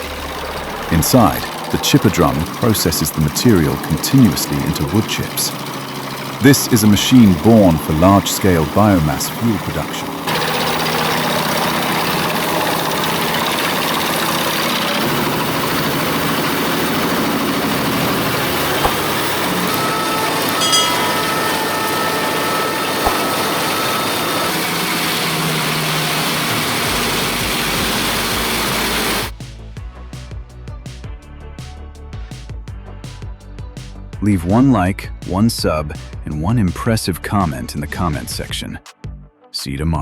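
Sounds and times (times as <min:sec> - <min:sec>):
music: 0:00.0 - 0:10.3, 0:10.9 - 0:25.0, 0:26.5 - 0:40.0
engine under load: 0:00.0 - 0:29.3
wood chipper grinding branches: 0:00.0 - 0:29.3.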